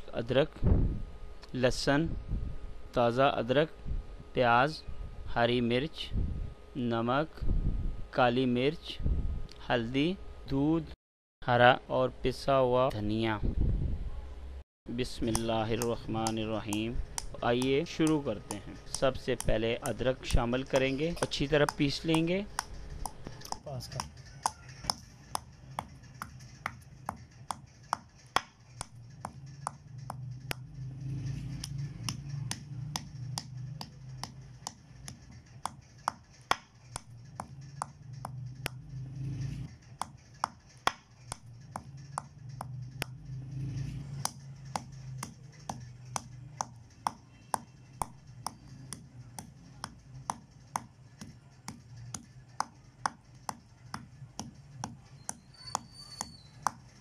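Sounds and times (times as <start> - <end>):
pestle pounding ginger: 15.0 - 38.8, 39.8 - 43.2, 44.2 - 57.0.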